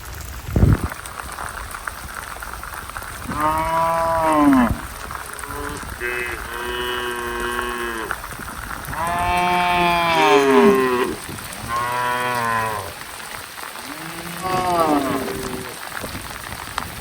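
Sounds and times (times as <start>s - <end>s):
rain hissing: 0.0s - 17.0s
cattle mooing: 3.3s - 8.2s, 8.9s - 13.0s, 13.8s - 15.8s.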